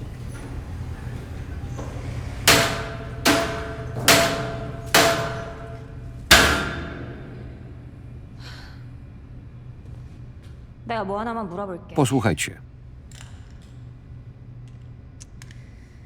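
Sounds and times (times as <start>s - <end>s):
ringing metallic bangs: 0.0s - 8.3s.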